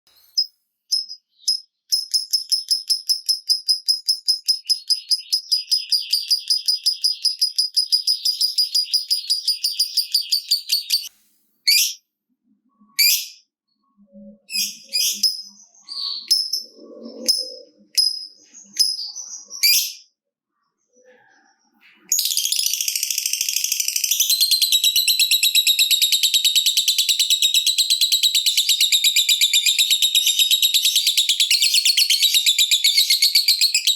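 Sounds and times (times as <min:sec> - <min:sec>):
bird shrill chirps and squeaks: 0:11.7 - 0:12.0, 0:12.8 - 0:13.4, 0:14.1 - 0:20.1.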